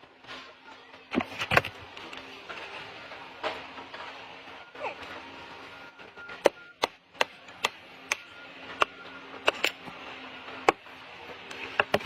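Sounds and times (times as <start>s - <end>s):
wood being chopped: 6.4s - 8.2s.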